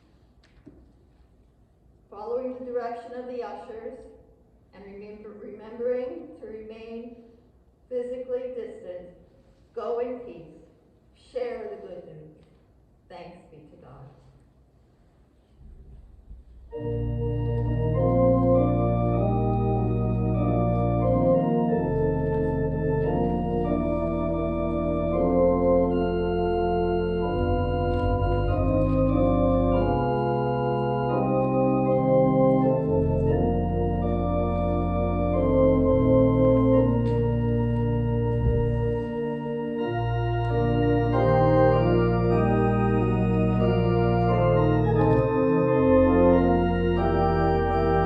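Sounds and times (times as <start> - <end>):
church organ chords: 16.5 - 48.0.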